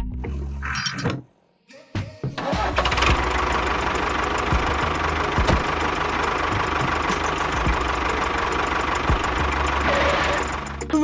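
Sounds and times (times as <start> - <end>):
engine idling: 2.5 - 11.0.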